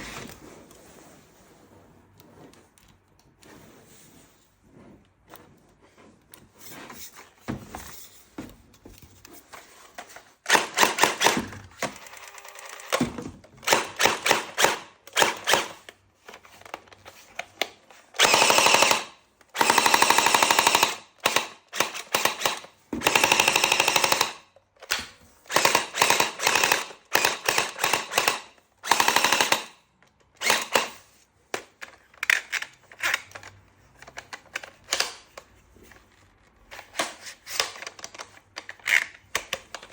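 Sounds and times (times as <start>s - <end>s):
toy gun firing rattling bursts: 10.5s - 13.0s, 13.6s - 15.8s, 18.2s - 24.5s, 25.5s - 29.8s, 30.4s - 31.0s.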